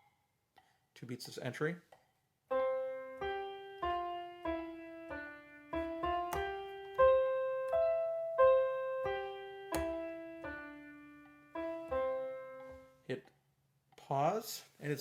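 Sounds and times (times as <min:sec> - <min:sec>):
digital piano melody: 0:02.5 - 0:13.1.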